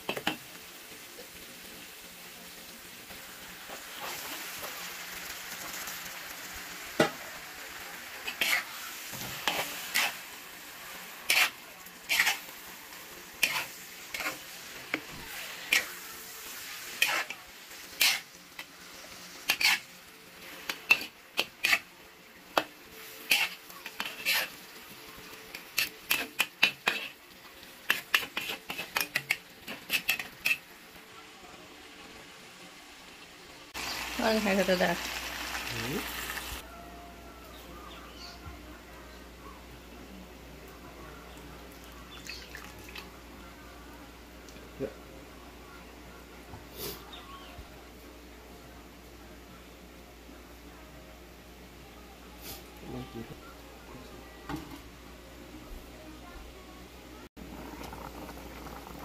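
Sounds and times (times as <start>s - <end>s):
food sizzling in frying pan: 0.0s - 36.8s, 57.2s - 59.0s
utensil scraping pan: 8.2s - 10.2s, 11.2s - 12.5s, 13.4s - 16.0s, 17.0s - 18.4s, 19.4s - 19.9s, 20.7s - 21.9s, 22.6s - 24.6s, 25.5s - 27.2s, 27.8s - 30.7s.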